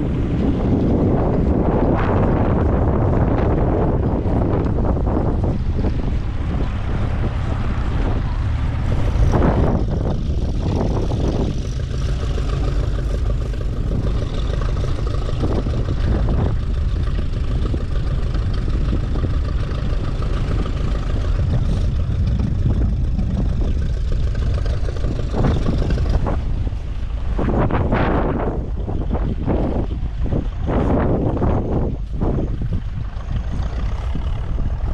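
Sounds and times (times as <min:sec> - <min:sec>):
engine running: 0:00.0 - 0:34.9
wind buffeting microphone: 0:00.0 - 0:34.9.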